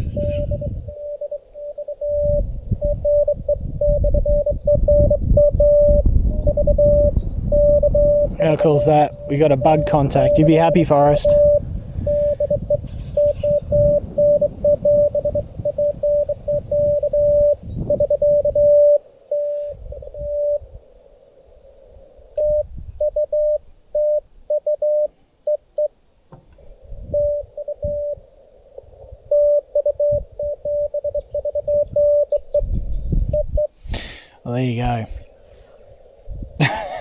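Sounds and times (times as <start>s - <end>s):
morse code tone: 0.0s - 20.6s, 22.4s - 25.9s, 27.1s - 28.2s, 29.3s - 32.7s, 33.3s - 33.7s
low rumble: 0.0s - 23.5s.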